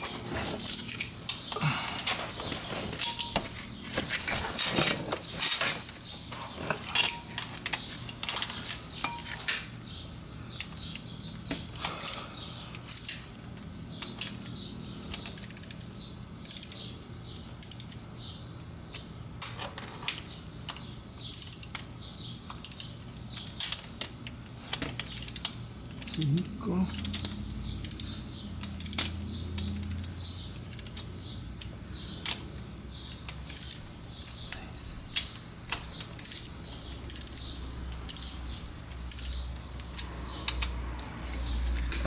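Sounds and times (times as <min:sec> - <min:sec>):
metal hand tools clinking: 0:03.0 - 0:03.5.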